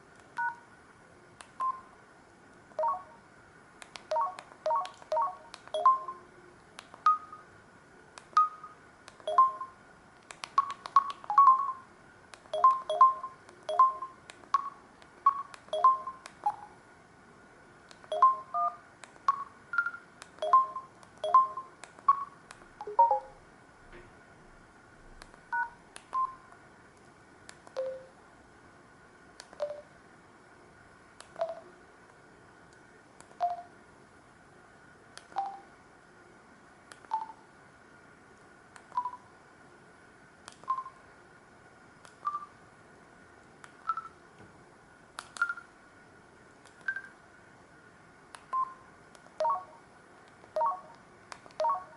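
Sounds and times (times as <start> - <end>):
phone ringtone beeping notes: 22.9 - 23.4.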